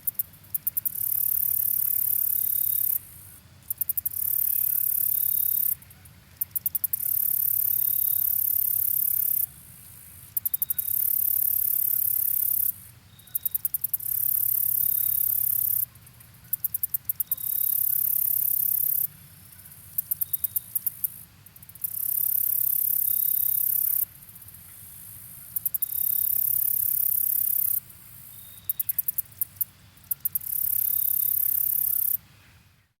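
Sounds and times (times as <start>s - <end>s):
high-pitched insect clicking and buzzing: 0.0s - 3.0s, 6.4s - 9.5s, 13.4s - 15.9s, 16.5s - 19.1s, 19.9s - 25.0s, 25.6s - 27.8s, 28.7s - 32.2s.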